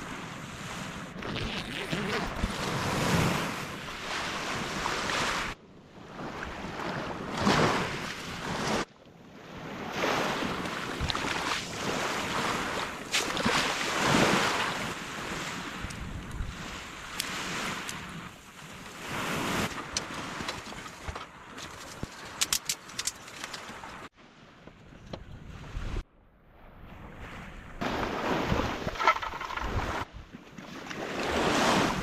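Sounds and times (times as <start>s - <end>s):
sea waves washing in: 9.6s - 20.7s
wind noise on microphone: 26.7s - 30.3s.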